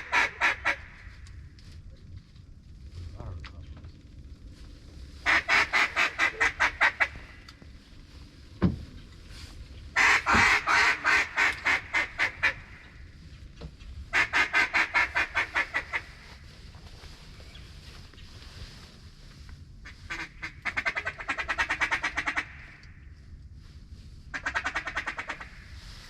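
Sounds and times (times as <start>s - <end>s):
duck quacking: 5.3s - 7.3s, 10.0s - 12.8s.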